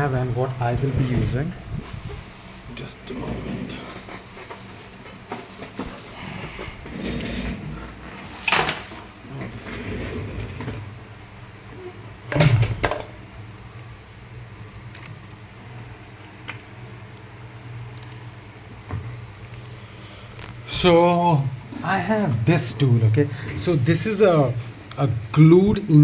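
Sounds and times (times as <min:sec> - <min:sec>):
low steady hum: 0:00.0 - 0:26.0
hand tools clattering on workbench: 0:12.3 - 0:13.2.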